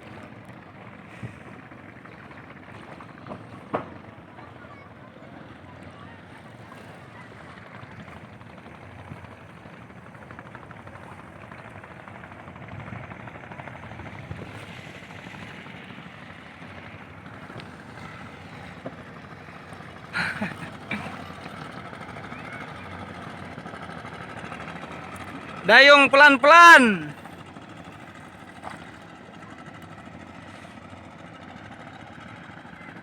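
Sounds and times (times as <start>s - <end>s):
boat engine running: 0.0s - 33.0s.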